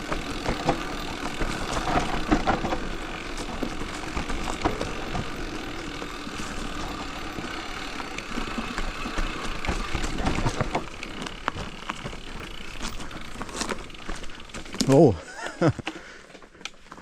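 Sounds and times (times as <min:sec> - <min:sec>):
bike knocking over bumps: 0:00.0 - 0:14.8
bike tyres rolling: 0:00.0 - 0:17.0.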